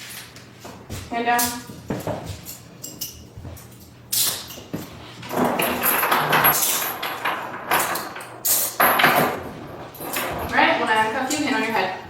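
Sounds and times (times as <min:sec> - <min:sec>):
metal handcuffs clinking: 0:02.4 - 0:04.7.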